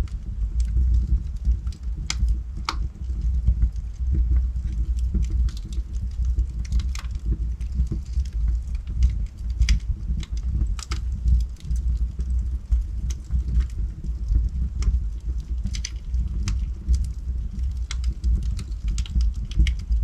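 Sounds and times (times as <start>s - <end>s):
burning wood crackling and popping: 0.0s - 20.0s
low rumble of fire: 0.0s - 20.0s.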